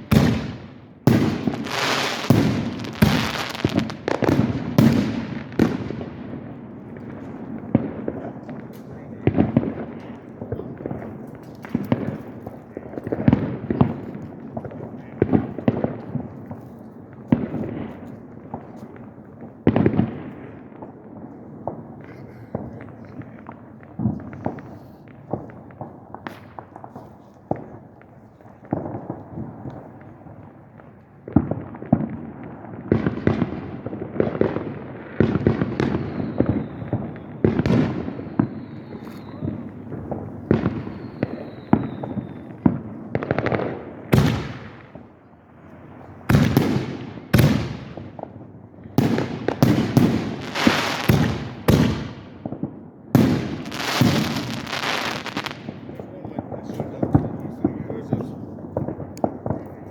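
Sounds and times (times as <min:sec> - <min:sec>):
firework bangs and crackling: 0:00.0 - 0:59.9
firework whistles falling in pitch: 0:35.8 - 0:37.4, 0:38.1 - 0:39.8, 0:40.6 - 0:42.6.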